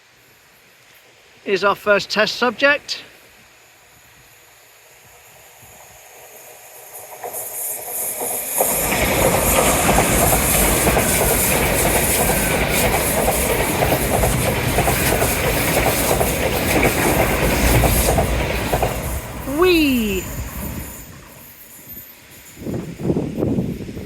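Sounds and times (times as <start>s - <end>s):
train wheels clattering over rails: 5.0s - 19.5s.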